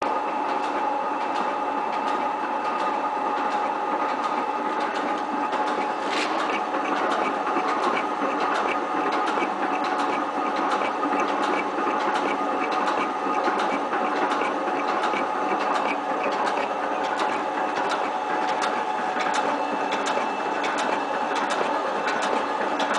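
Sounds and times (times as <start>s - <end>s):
machine motor and gear hum: 0.0s - 22.9s
sharp machine clicks: 0.6s - 22.9s.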